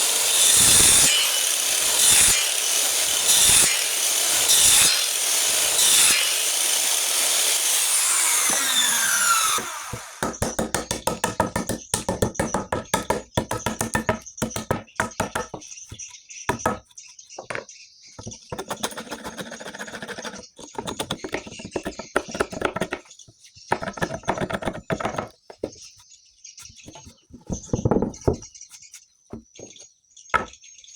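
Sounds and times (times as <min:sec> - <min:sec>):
power saw cutting wood: 0:00.0 - 0:10.4
scraping and knocking on wood: 0:10.2 - 0:26.0, 0:26.6 - 0:30.6.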